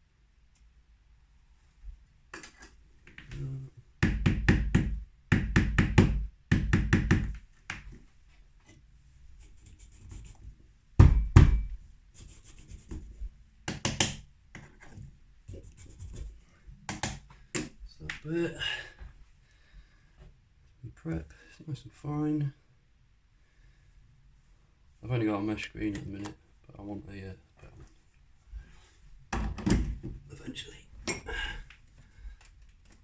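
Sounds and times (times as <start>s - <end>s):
heavier knock: 4.0s - 7.4s, 11.0s - 11.8s
rapid knocks on a counter: 4.0s - 7.9s, 11.0s - 11.8s, 13.7s - 14.7s.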